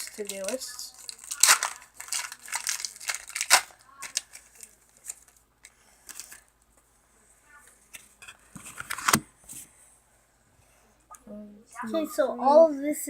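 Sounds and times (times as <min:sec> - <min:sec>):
foil wrapper crinkling: 0:00.0 - 0:06.5.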